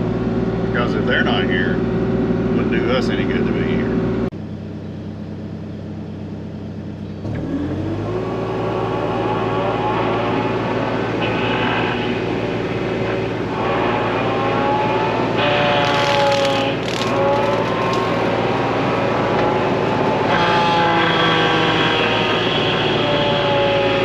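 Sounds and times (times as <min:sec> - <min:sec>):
excavator diesel engine: 0:00.0 - 0:24.0
rotary mower whine: 0:00.0 - 0:24.0.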